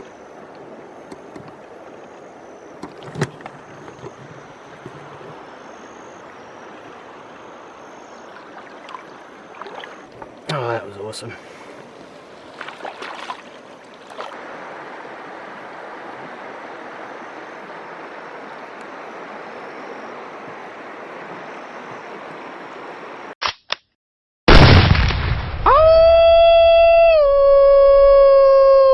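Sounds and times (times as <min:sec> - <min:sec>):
stream water running: 0:00.0 - 0:23.4
loud boom: 0:24.5 - 0:26.0.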